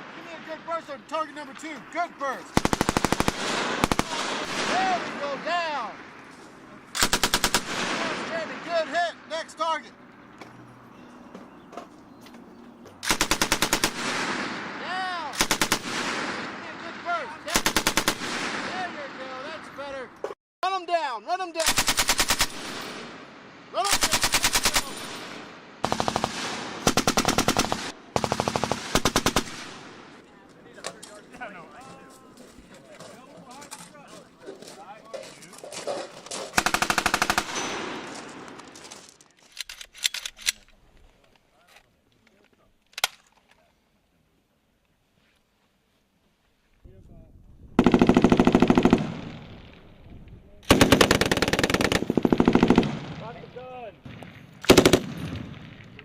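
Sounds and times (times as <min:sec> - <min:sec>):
machine gun automatic bursts: 0:02.5 - 0:04.8, 0:07.0 - 0:08.3, 0:13.0 - 0:14.4, 0:15.4 - 0:16.4, 0:17.5 - 0:18.5, 0:21.6 - 0:23.0, 0:23.8 - 0:29.8, 0:36.2 - 0:38.6, 0:47.8 - 0:49.5, 0:50.7 - 0:53.2, 0:54.6 - 0:55.4
gunshot echoes: 0:03.3 - 0:05.4.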